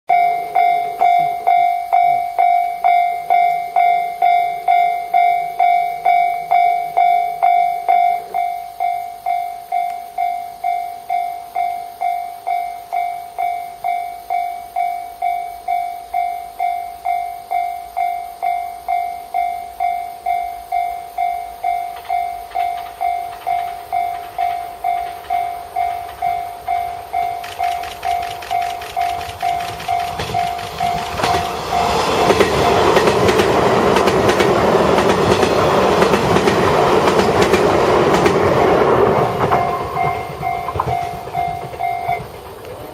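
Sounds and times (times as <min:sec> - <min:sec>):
level crossing bell ringing: 0:00.1 - 0:15.5, 0:16.2 - 0:32.0, 0:39.4 - 0:42.4
train approaching: 0:00.1 - 0:42.9.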